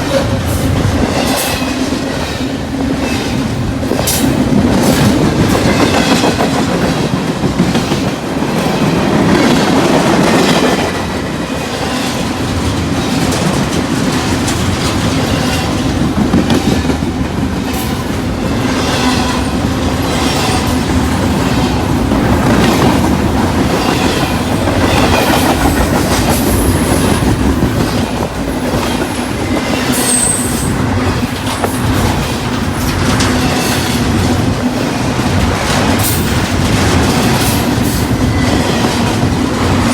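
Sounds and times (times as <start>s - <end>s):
train wheels clickety-clack: 0.0s - 39.9s
high wheel squeal: 28.8s - 31.4s.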